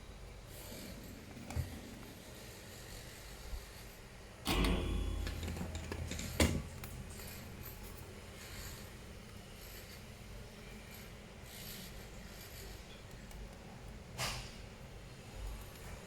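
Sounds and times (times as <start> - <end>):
sharp click: 4.5 - 7.8.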